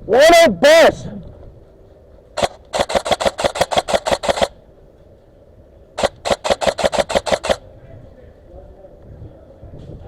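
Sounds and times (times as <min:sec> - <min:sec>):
airsoft gun firing rapidly: 0:02.4 - 0:04.6, 0:06.0 - 0:07.6.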